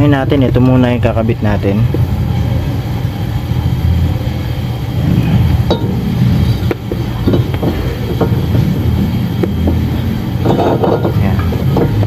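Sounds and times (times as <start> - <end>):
steady low rumble: 0.0 - 12.0
metal brake parts clinking: 5.7 - 12.0.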